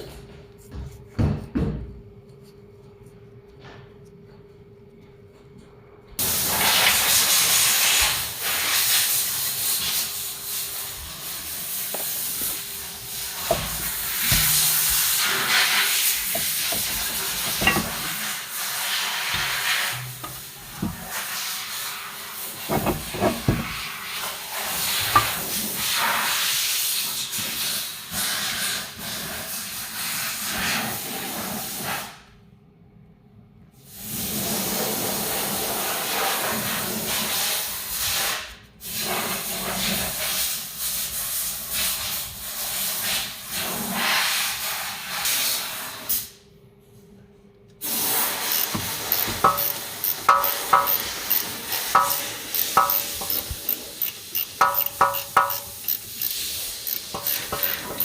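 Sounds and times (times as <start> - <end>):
loud rough hissing: 47.8 - 58.0.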